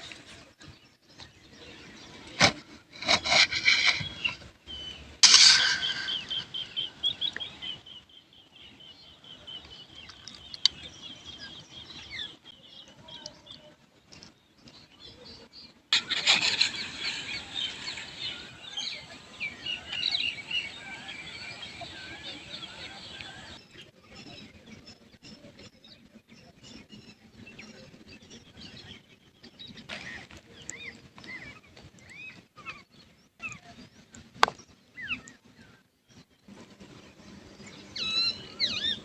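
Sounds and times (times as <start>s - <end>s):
small birds chirping: 0.0s - 39.0s
handling rubbing sounds: 2.4s - 4.5s.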